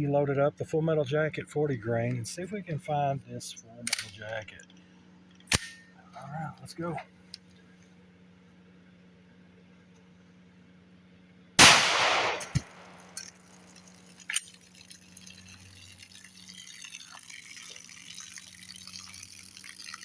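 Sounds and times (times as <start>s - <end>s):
pistol shot: 11.6s - 13.3s
sharp crack: 11.6s - 17.6s
water running and splashing: 12.6s - 20.0s.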